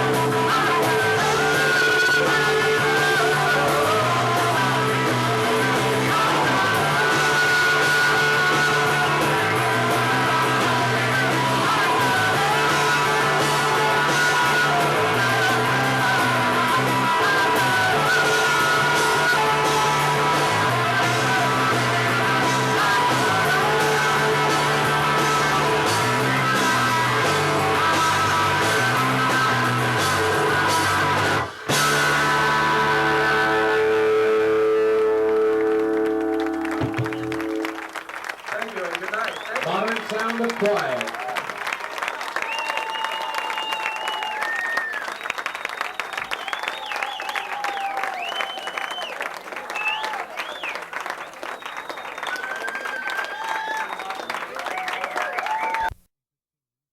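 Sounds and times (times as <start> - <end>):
person singing: 0.0 - 34.9
bass line: 0.0 - 38.0
electric guitar: 0.0 - 38.1
percussion: 36.4 - 47.6.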